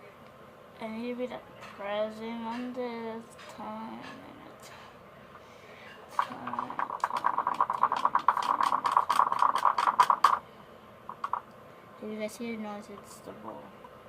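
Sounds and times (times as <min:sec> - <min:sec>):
mixing bowl scraping: 0:06.1 - 0:10.4.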